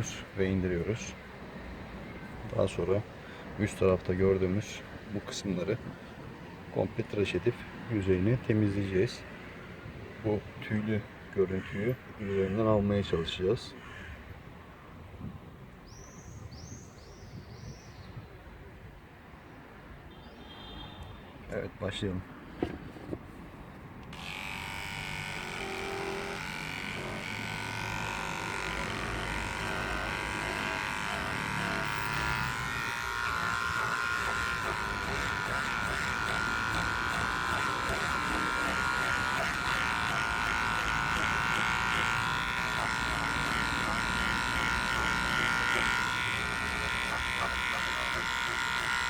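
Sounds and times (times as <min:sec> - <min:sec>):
electric shaver on fabric: 0:24.1 - 0:49.0.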